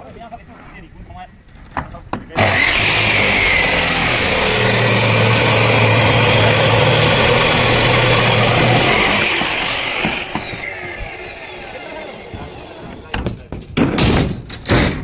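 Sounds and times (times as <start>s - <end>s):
power saw cutting wood: 2.4s - 13.2s.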